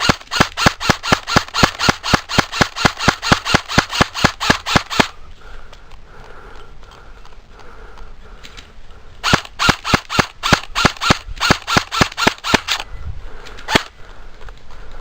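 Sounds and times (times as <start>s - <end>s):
airsoft gun shots: 0.0s - 5.1s, 9.2s - 12.8s, 13.7s - 13.9s.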